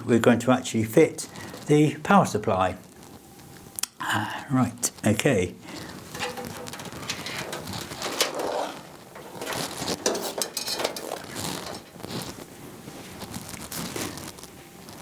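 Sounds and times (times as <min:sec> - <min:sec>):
rustling: 0:05.6 - 0:15.0.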